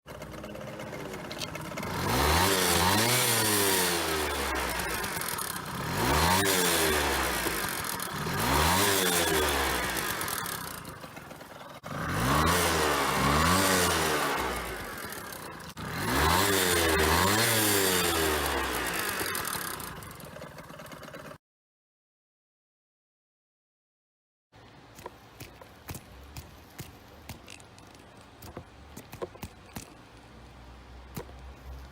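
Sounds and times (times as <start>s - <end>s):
scooter engine revving: 0.0s - 21.4s.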